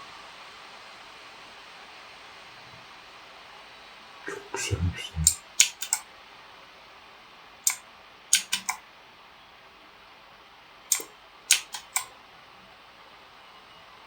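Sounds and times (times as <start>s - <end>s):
mechanical keyboard key clicks: 5.2s - 6.0s, 8.4s - 8.8s, 10.9s - 12.1s.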